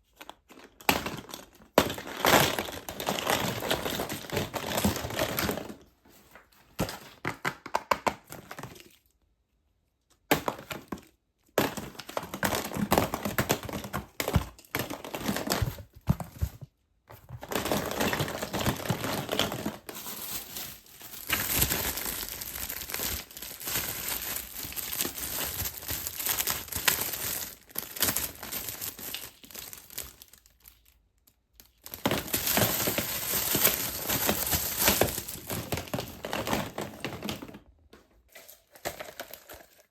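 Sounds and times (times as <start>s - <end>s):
wrappers crinkling and tearing: 17.5s - 37.6s, 38.3s - 39.9s.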